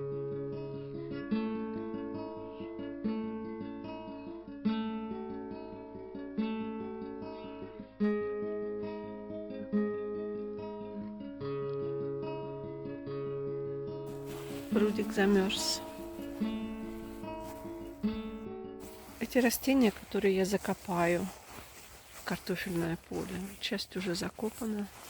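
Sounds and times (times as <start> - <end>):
acoustic guitar picking: 14.1 - 19.9.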